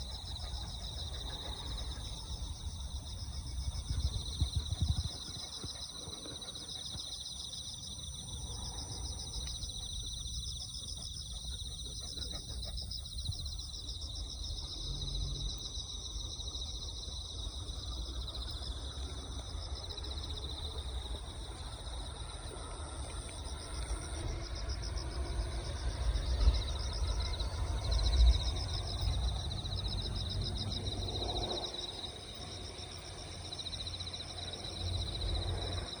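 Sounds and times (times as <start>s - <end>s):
low rumble: 0.0s - 6.2s
insects trilling: 0.0s - 36.0s.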